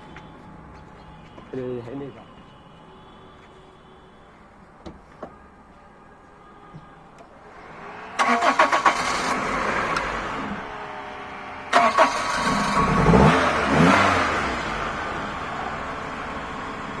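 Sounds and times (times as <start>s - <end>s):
car engine revving: 7.5s - 17.0s
car starter cranking: 8.2s - 10.6s, 11.7s - 14.1s.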